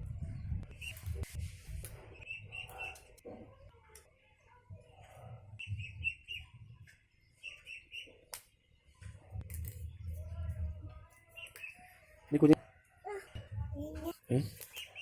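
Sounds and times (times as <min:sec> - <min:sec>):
low rumble: 0:00.0 - 0:02.0
small bird chirping: 0:05.6 - 0:08.2, 0:11.2 - 0:12.1, 0:13.9 - 0:15.0.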